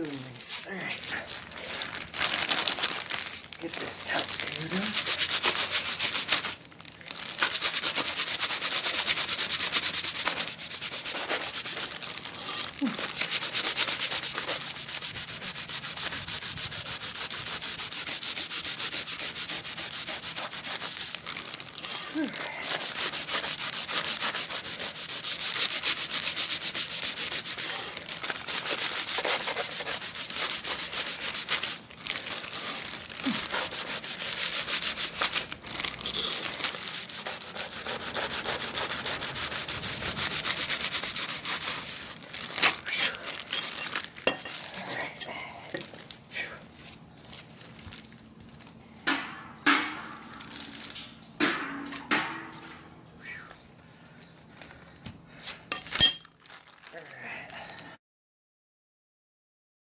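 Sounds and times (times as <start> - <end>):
scouring pad scrubbing metal: 3.7 - 6.5, 7.3 - 21.1, 21.8 - 31.8, 32.4 - 43.6.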